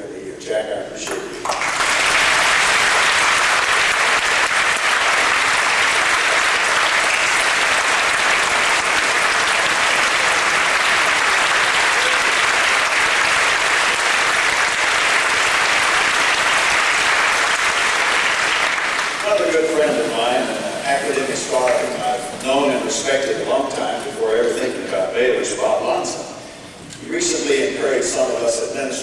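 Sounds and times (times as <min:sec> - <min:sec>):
audience applauding: 0:01.4 - 0:22.3.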